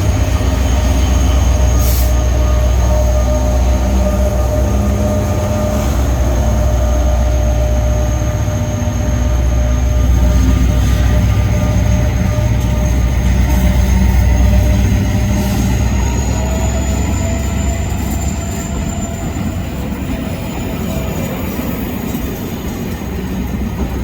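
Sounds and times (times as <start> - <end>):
high-pitched whine: 0.0 - 22.7
diesel locomotive drone: 0.0 - 24.0.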